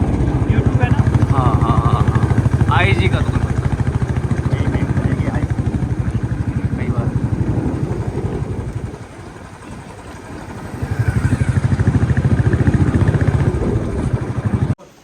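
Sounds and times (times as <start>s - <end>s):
motorcycle engine running: 0.0s - 14.8s.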